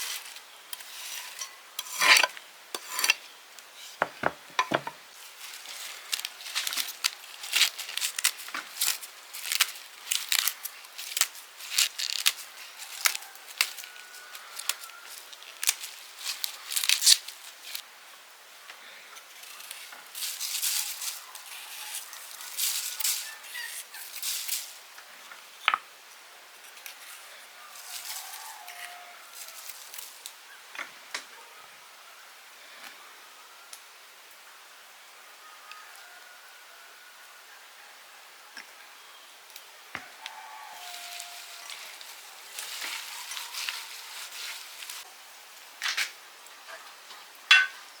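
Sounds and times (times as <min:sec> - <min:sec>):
utensil scraping in a pan: 0:00.0 - 0:17.8, 0:40.3 - 0:45.1.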